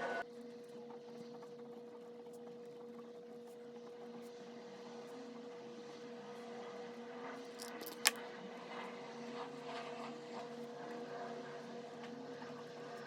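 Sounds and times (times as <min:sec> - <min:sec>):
sharp click: 0:07.6 - 0:08.2.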